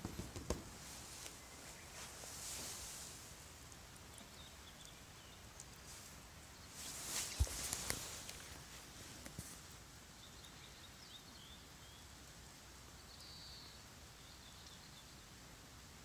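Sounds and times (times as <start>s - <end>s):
small ticks: 3.6s - 6.0s.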